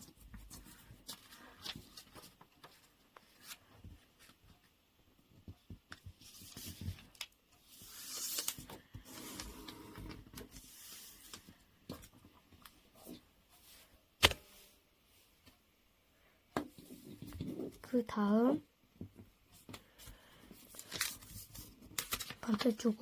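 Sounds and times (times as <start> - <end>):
paper crinkling: 6.0 - 12.2, 19.8 - 23.0.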